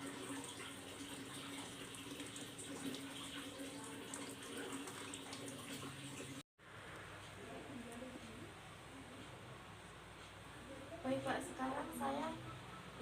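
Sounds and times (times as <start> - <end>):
water running from a tap: 0.0 - 6.4.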